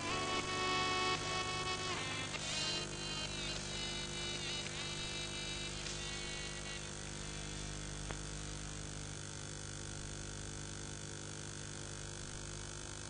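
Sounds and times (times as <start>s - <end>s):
background music: 0.0s - 6.8s
electrical hum and hiss: 0.0s - 13.0s.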